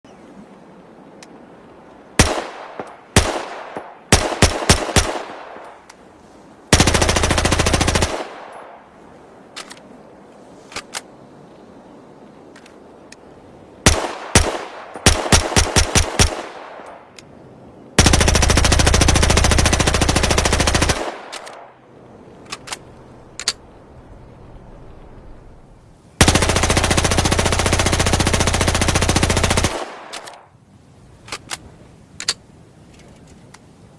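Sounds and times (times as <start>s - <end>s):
faint clicks: 1.1s - 2.0s, 5.5s - 6.0s, 9.5s - 11.1s, 12.5s - 13.3s, 16.8s - 17.3s, 21.2s - 21.7s, 22.4s - 23.8s, 31.2s - 33.8s
submachine gun firing: 2.2s - 5.6s, 6.7s - 8.6s, 13.8s - 16.8s, 18.0s - 21.7s, 26.2s - 30.4s.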